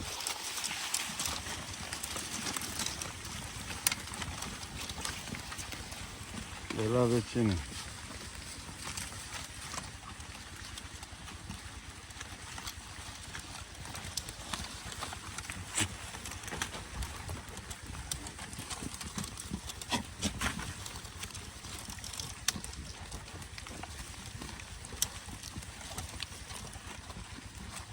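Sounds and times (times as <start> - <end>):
leafy branches rustling: 0.0 - 10.2.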